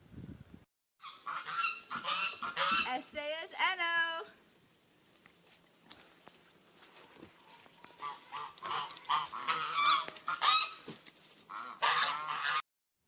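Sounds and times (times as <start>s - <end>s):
geese honking: 1.0s - 3.0s, 7.4s - 10.9s, 11.5s - 12.6s.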